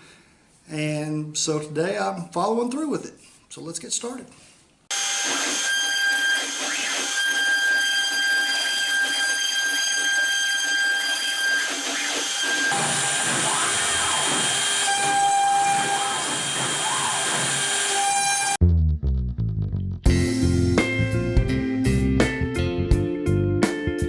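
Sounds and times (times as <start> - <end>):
rising and falling tones: 4.9 - 14.6
router spindle whine cutting wood: 4.9 - 18.6.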